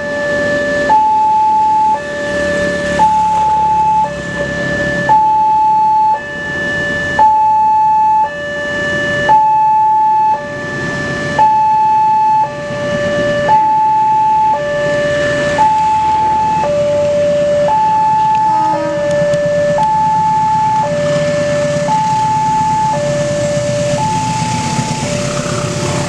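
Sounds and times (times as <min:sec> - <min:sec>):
level crossing two-tone alarm: 0:00.0 - 0:25.4
steady rushing noise: 0:15.1 - 0:26.0.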